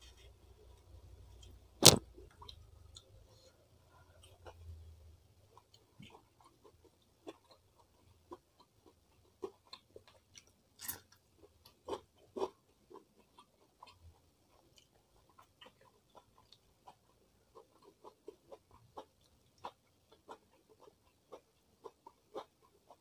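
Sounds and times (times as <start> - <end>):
crisp bites: 1.8 - 2.0
wet mouth clicks chewing: 5.5 - 23.0.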